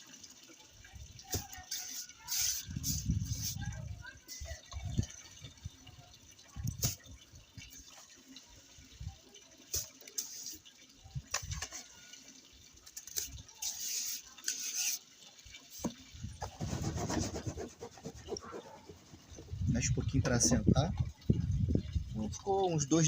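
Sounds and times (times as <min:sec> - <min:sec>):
mortar scraping in plastic basin: 0:16.4 - 0:19.2.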